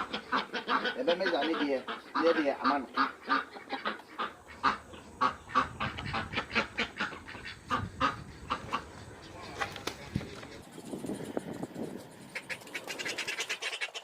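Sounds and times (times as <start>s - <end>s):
fowl honking calls: 0.0s - 10.7s, 12.2s - 14.0s.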